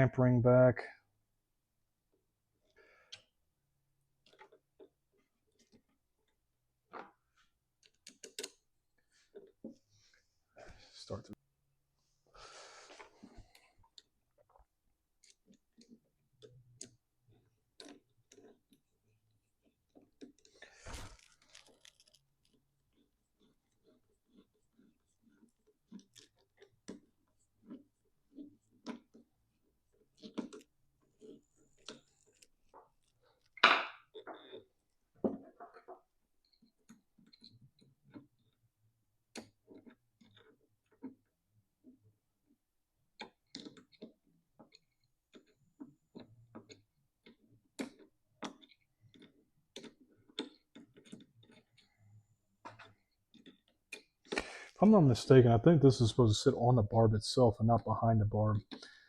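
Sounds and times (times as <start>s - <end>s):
faint clicks of small parts: 2.6s - 3.4s, 4.2s - 10.2s, 12.8s - 54.5s
hose fittings clicking and knocking: 7.8s - 8.6s, 13.1s - 18.9s, 43.2s - 51.9s, 52.6s - 54.4s.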